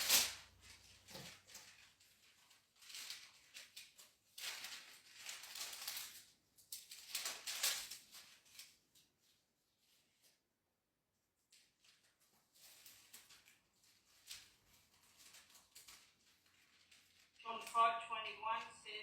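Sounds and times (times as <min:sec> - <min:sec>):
pages rustling: 0:11.6 - 0:17.4.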